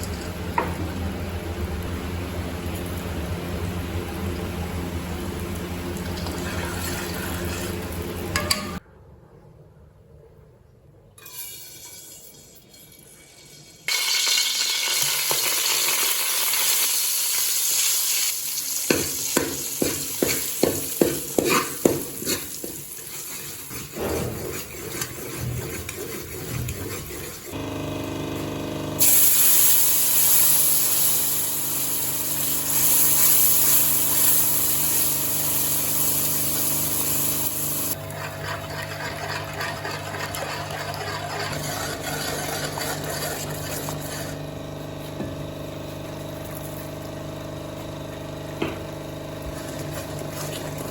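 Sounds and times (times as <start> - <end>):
food sizzling in a pan: 11.4 - 24.8, 27.8 - 38.0
utensil stirring against pan: 18.9 - 27.6, 32.8 - 44.4.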